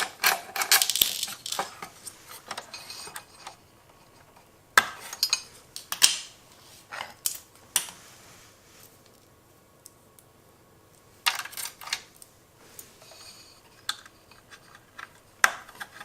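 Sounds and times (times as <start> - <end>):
metal parts clinking: 0.0 - 1.8.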